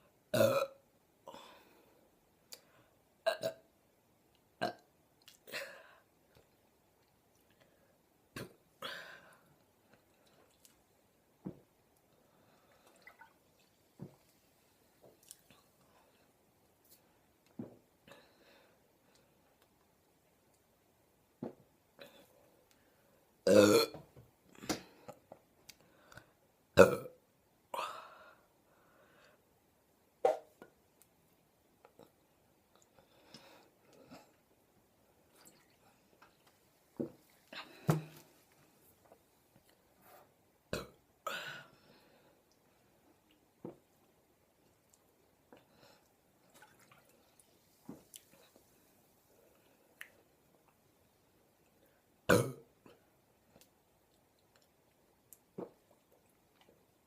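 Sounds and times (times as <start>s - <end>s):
person burping: 0.3s - 0.8s, 3.2s - 3.7s, 4.6s - 4.9s, 23.5s - 24.1s, 26.8s - 27.2s, 40.7s - 41.5s, 52.3s - 52.7s.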